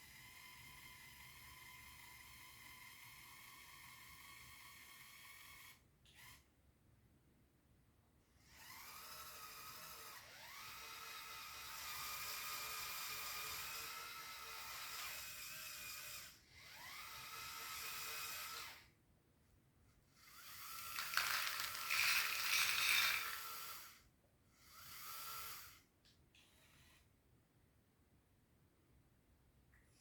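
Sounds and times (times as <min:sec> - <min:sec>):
small electric motors whining: 0:00.0 - 0:06.5, 0:08.4 - 0:18.9, 0:20.2 - 0:24.0, 0:24.6 - 0:25.8.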